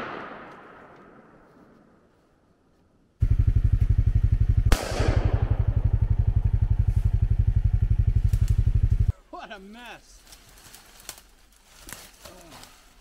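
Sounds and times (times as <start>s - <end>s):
quad engine idling: 3.2s - 9.1s.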